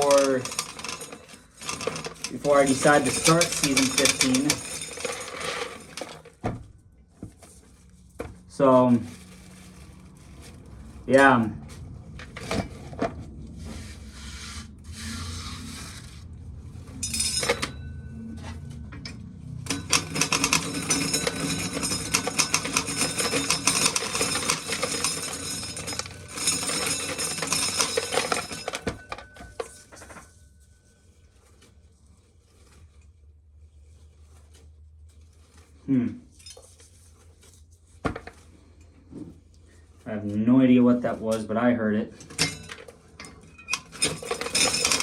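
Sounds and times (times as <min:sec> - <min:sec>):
corn kernels rattling into bucket: 0:00.0 - 0:06.3.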